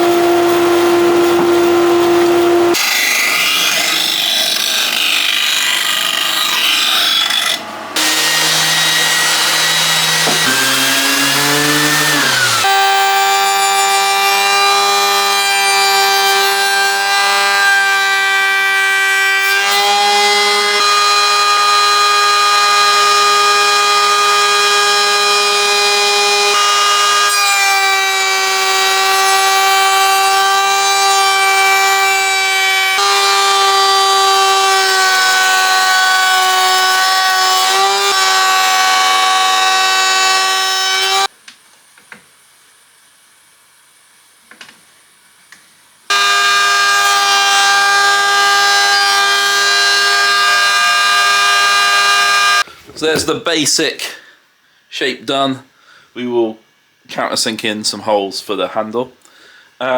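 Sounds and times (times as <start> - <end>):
bandsaw whining while cutting wood: 0.0 - 41.3, 46.1 - 53.2.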